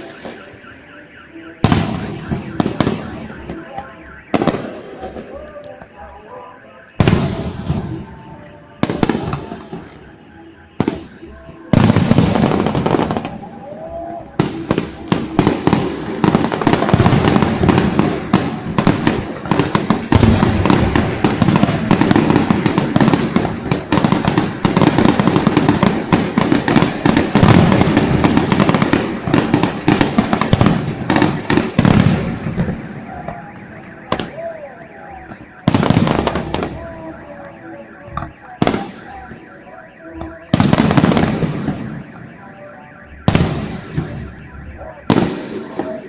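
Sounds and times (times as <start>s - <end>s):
fireworks bangs and crackling: 0.0s - 46.0s.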